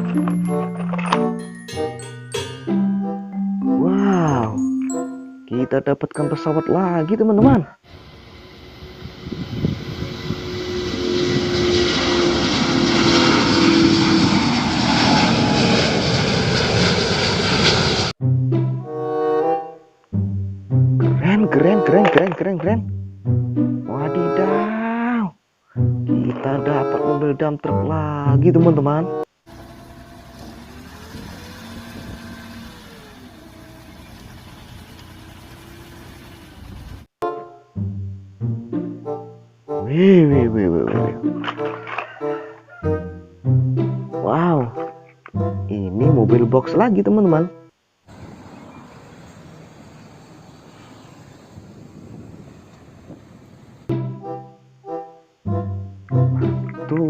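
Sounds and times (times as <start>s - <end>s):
faint rising and falling tone: 7.9s - 18.1s, 29.5s - 37.0s
airplane propeller engine drone: 7.9s - 18.2s, 29.5s - 37.1s, 48.1s - 53.9s
truck engine running: 29.5s - 37.1s.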